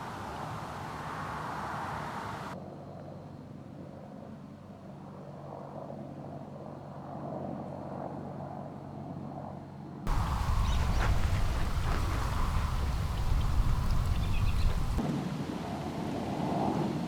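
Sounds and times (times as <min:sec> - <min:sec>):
distant water pump engine humming: 0:10.1 - 0:15.0.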